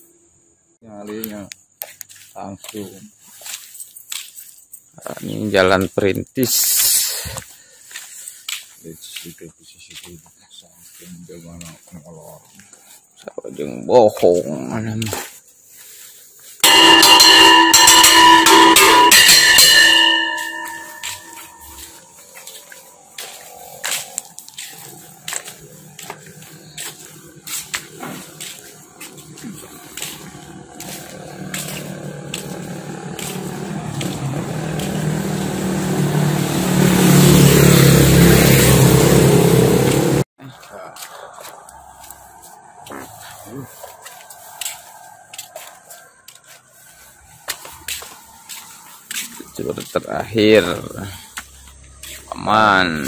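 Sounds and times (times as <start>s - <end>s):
bell-like ringing chord: 16.6s - 22.0s
vehicle engine running: 23.1s - 40.3s.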